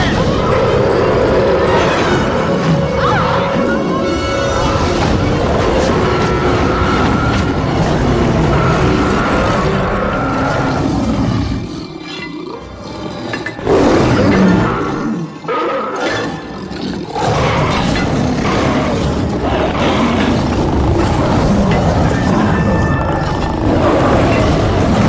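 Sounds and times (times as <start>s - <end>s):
soundtrack music: 0.0s - 12.0s
big cat roaring: 0.0s - 25.0s.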